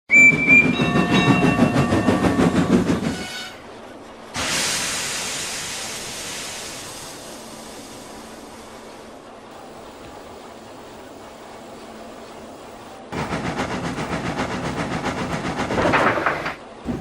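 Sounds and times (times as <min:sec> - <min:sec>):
steam locomotive chuffing: 0:00.1 - 0:03.7, 0:04.3 - 0:09.0, 0:13.1 - 0:17.0
steam hissing: 0:04.4 - 0:09.8, 0:13.1 - 0:17.0.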